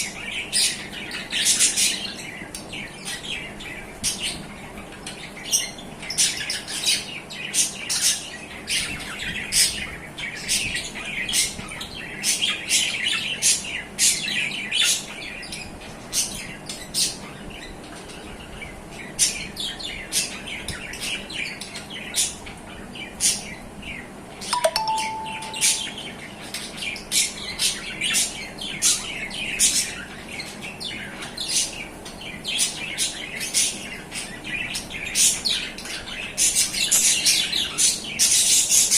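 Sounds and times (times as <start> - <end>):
brief steady tone: 24.6 - 26.0.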